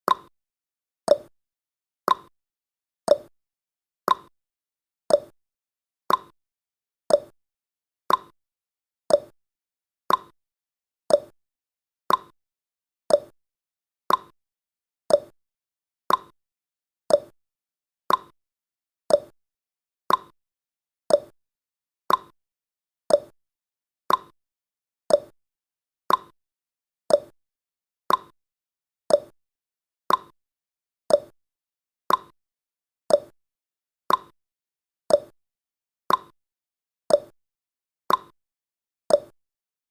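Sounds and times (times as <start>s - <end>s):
timer ticking: 0.1s - 0.3s, 1.1s - 1.3s, 2.1s - 2.3s, 3.1s - 3.3s, 4.1s - 4.3s, 5.1s - 5.3s, 6.1s - 6.3s, 7.1s - 7.4s, 8.1s - 8.3s, 9.1s - 9.3s, 10.1s - 10.3s, 11.1s - 11.4s, 12.1s - 12.3s, 13.1s - 13.4s, 14.1s - 14.3s, 15.1s - 15.4s, 16.1s - 16.3s, 17.1s - 17.4s, 18.1s - 18.3s, 19.1s - 19.4s, 20.1s - 20.4s, 21.1s - 21.4s, 22.1s - 22.3s, 23.1s - 23.4s, 24.1s - 24.3s, 25.1s - 25.4s, 26.1s - 26.4s, 27.1s - 27.4s, 28.1s - 28.4s, 29.1s - 29.4s, 30.1s - 30.4s, 31.1s - 31.4s, 32.1s - 32.4s, 33.1s - 33.4s, 34.1s - 34.4s, 35.1s - 35.4s, 36.1s - 36.4s, 37.1s - 37.4s, 38.1s - 38.4s, 39.1s - 39.4s.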